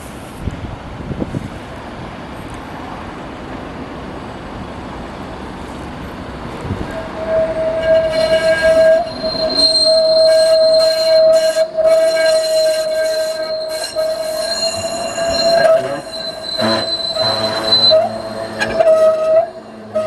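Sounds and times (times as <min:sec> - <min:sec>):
train rumbling along rails: 0:00.0 - 0:20.0
high-pitched wheel squeal: 0:06.8 - 0:20.0.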